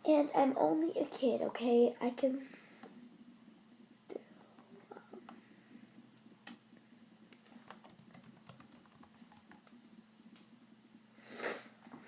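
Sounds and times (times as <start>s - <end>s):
low steady hum: 0.0s - 12.0s
computer keyboard clicks: 7.4s - 9.8s.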